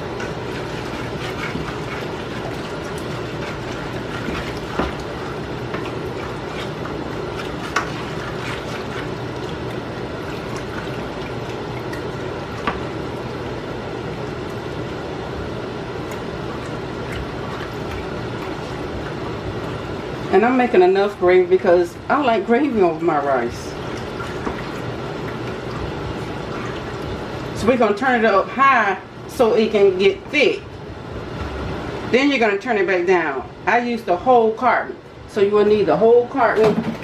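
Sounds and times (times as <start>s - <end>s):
stock bubbling in a pan: 23.5s - 27.6s.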